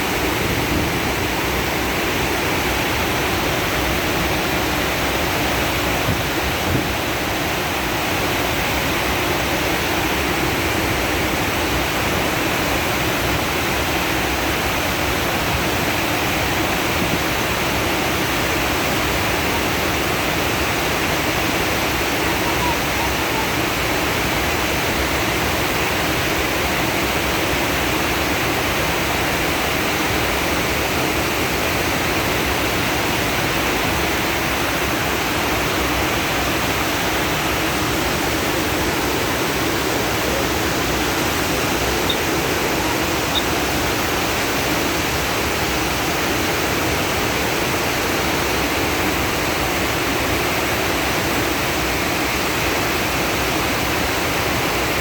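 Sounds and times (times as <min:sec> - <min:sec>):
water rushing: 0:00.0 - 0:55.0.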